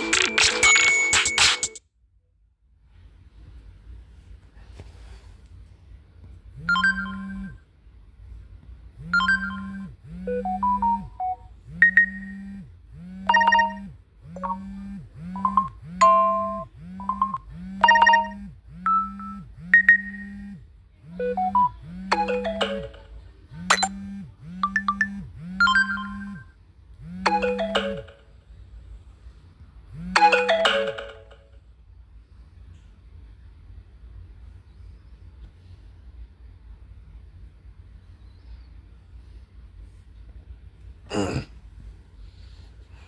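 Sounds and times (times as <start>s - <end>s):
phone ringtone melody: 0.0s - 1.8s, 6.6s - 7.5s, 9.0s - 12.5s, 13.2s - 20.4s, 21.1s - 23.9s, 24.6s - 26.4s, 27.2s - 28.3s, 30.1s - 31.5s.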